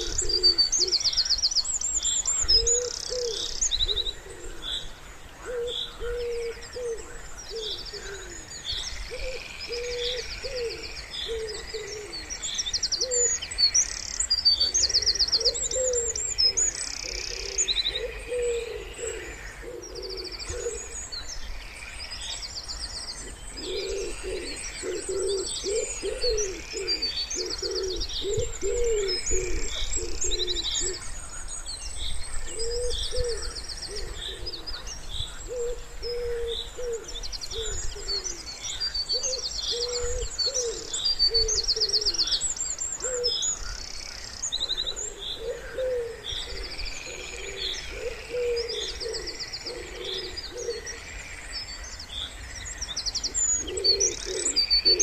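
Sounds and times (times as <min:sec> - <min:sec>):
pigeon cooing: 0:00.0 - 0:01.0, 0:02.5 - 0:04.8, 0:05.4 - 0:08.4, 0:09.1 - 0:12.3, 0:14.6 - 0:16.2, 0:17.0 - 0:21.0, 0:23.6 - 0:31.0, 0:32.5 - 0:34.9, 0:35.5 - 0:38.4, 0:39.1 - 0:42.2, 0:43.0 - 0:43.3, 0:44.9 - 0:50.9, 0:53.6 - 0:55.0
songbirds chirping: 0:00.0 - 0:55.0.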